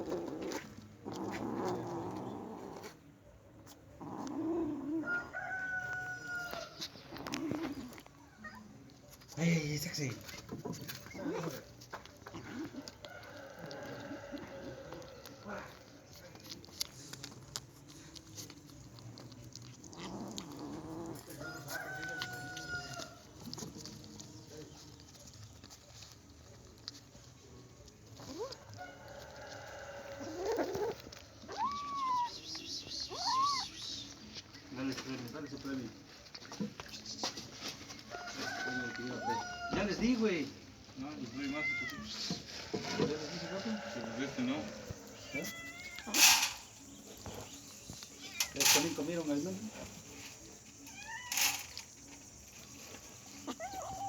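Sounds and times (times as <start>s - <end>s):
rooster crowing: 5.0s - 6.8s, 13.0s - 15.4s, 21.3s - 23.2s, 38.1s - 40.0s, 42.8s - 45.2s.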